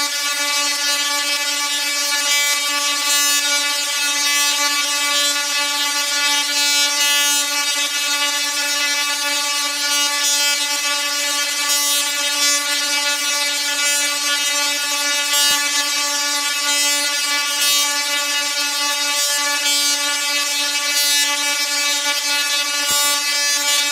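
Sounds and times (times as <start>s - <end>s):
crackling hiss of arcs: 0.0s - 23.9s
tesla coil sparks buzzing: 0.0s - 23.9s.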